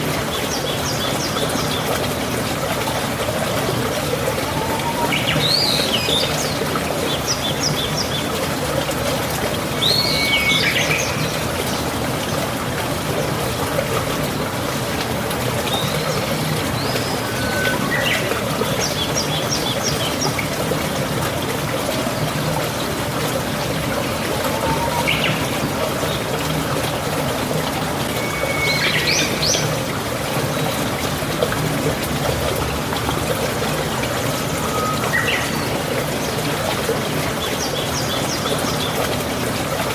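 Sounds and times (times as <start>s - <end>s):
trickling water: 0.0s - 39.9s
birds chirping and whistling: 9.8s - 11.2s, 16.8s - 19.1s, 24.5s - 25.5s, 28.2s - 29.7s, 34.6s - 35.8s.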